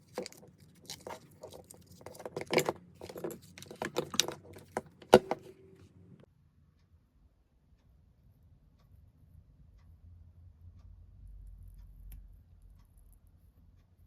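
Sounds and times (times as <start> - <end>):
small hard objects clicking: 0.0 - 5.4.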